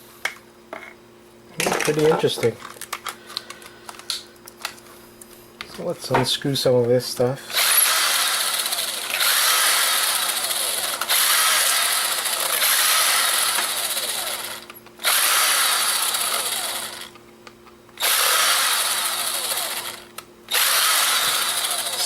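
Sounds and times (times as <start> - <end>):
electric screwdriver whirring: 7.5 - 17.2, 18.0 - 22.0.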